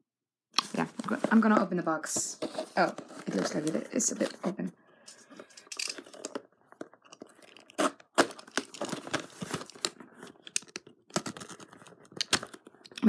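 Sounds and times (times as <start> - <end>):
packaging tearing and rustling: 5.4 - 12.9.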